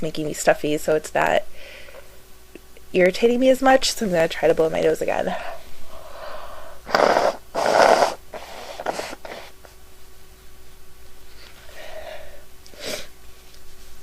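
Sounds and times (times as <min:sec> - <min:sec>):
woman blowing her nose: 0:06.8 - 0:09.7, 0:12.7 - 0:13.1.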